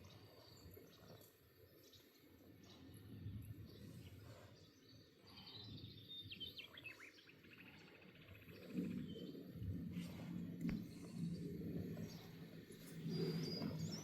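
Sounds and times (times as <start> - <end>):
songbird chirping and trilling: 0.1 - 14.0
faint low rumble: 8.4 - 14.0.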